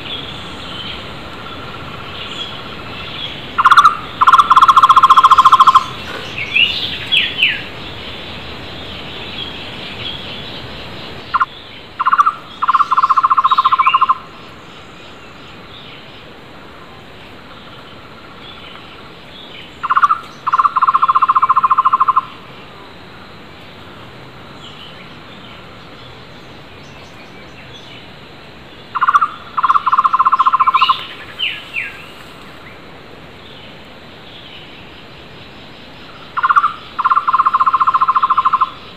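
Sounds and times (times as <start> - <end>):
birds chirping: 0.0 - 23.0, 23.6 - 38.9
barbet trilling call: 2.4 - 7.7, 11.3 - 14.4, 19.8 - 22.5, 28.9 - 32.0, 36.2 - 38.9.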